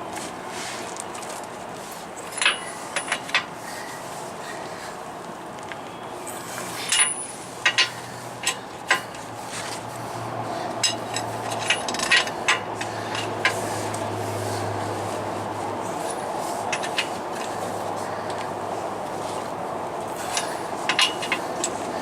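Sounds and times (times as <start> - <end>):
metal clinks of wrench on nuts: 2.2 - 3.4, 6.8 - 9.1, 20.2 - 21.8.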